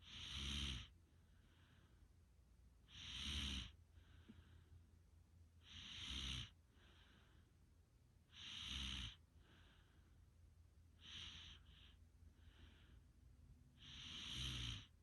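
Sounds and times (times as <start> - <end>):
person snoring: 0.0 - 0.9, 2.9 - 3.8, 5.6 - 6.6, 8.3 - 9.2, 11.0 - 11.7, 13.8 - 15.0.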